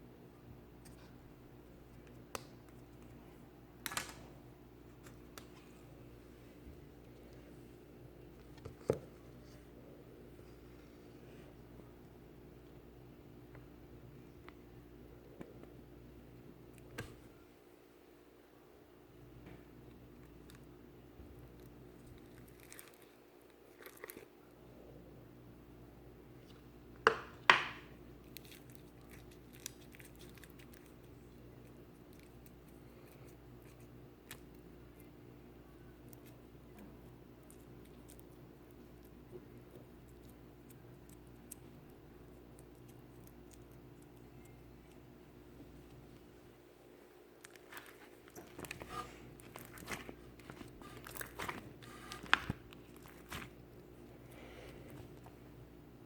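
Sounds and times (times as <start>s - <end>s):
faint clicks and crackles: 47.4s - 55.4s.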